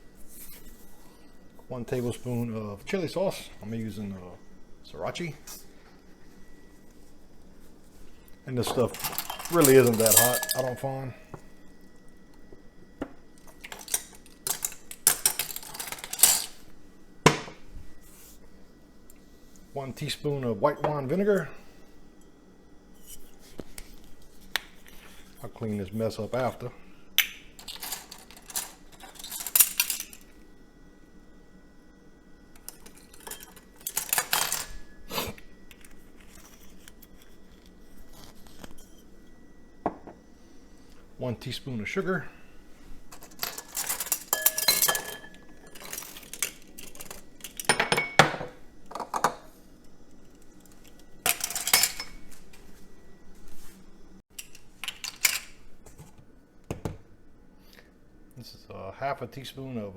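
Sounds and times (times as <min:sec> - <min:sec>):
utensils clinking and clattering: 0:08.6 - 0:11.0, 0:13.4 - 0:16.6, 0:27.6 - 0:30.2, 0:32.6 - 0:34.9, 0:43.1 - 0:49.4, 0:50.6 - 0:52.4, 0:54.3 - 0:55.6.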